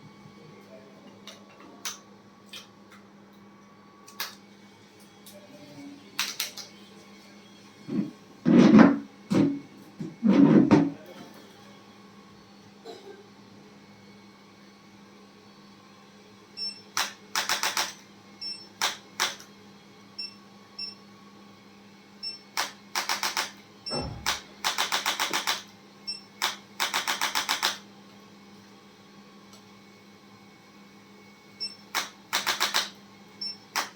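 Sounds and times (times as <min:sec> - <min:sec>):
dull low thump: 0:24.0 - 0:24.4.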